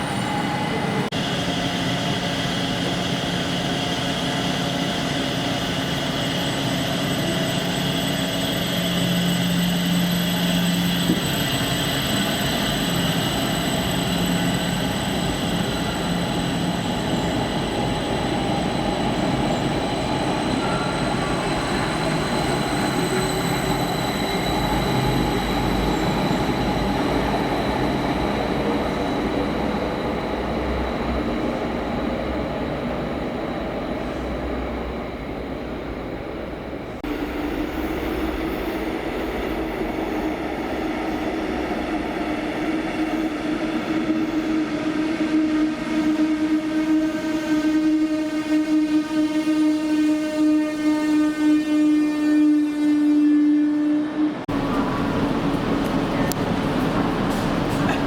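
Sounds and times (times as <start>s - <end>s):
train wheels rumbling: 54.4s - 58.0s.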